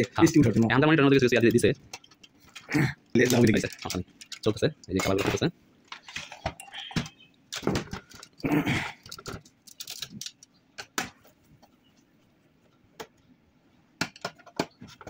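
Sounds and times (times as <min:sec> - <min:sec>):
printer parts clicking and clinking: 0:03.2 - 0:08.4, 0:09.0 - 0:11.0.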